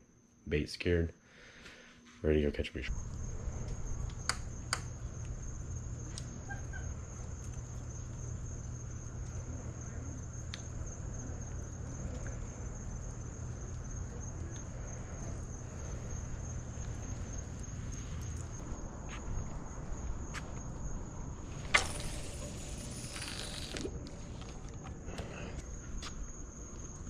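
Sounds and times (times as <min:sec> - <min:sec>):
insects singing: 0:02.8 - 0:27.0
low rumble: 0:02.9 - 0:24.4
sharp clicks: 0:03.7 - 0:05.3.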